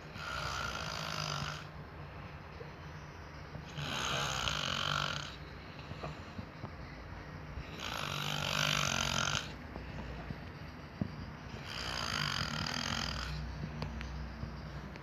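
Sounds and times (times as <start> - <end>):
person snoring: 0.1 - 1.7, 3.7 - 5.4, 7.6 - 9.6, 11.5 - 13.5.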